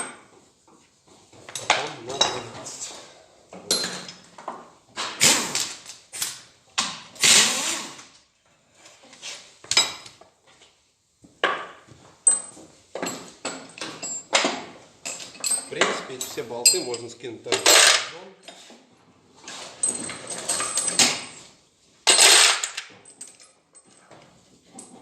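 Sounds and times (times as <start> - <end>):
metal tools clinking: 1.5 - 3.0, 3.6 - 4.4, 12.2 - 18.6, 19.5 - 21.5, 22.1 - 25.0.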